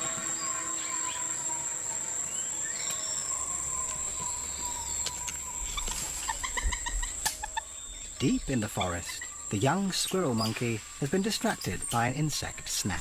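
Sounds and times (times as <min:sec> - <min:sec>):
high-pitched insect drone: 0:00.0 - 0:13.0.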